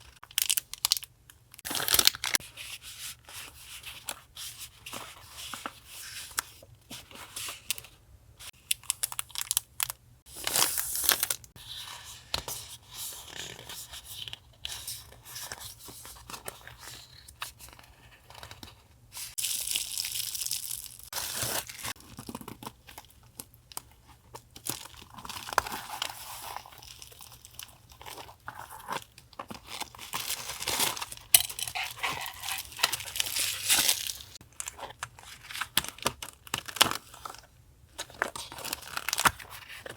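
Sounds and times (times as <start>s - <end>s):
paper and plastic packaging rustling: 13.9s - 39.9s.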